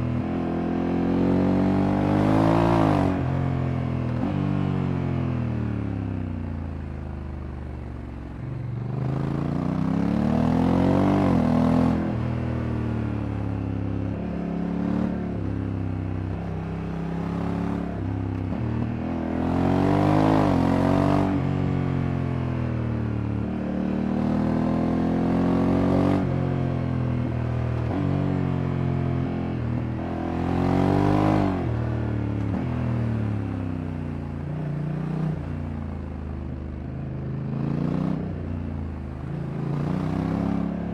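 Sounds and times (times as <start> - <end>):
motorcycle engine accelerating: 37.4 - 40.9.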